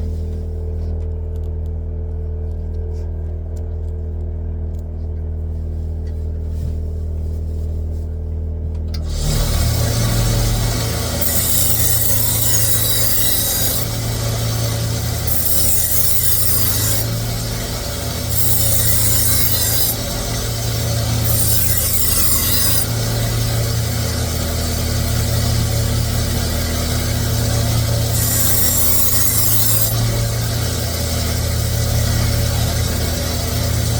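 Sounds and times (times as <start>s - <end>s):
sharpener motor humming: 9.0s - 33.9s
knife rasping on abrasive: 9.1s - 33.9s.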